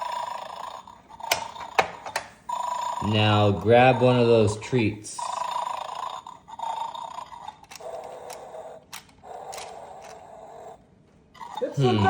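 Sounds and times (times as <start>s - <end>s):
recorded snore from small speaker: 0.0s - 1.8s, 2.5s - 4.3s, 5.2s - 10.8s.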